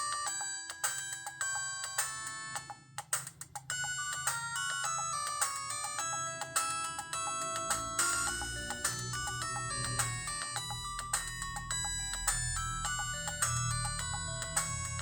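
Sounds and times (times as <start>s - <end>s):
mobile phone ringtone melody: 3.7s - 15.0s.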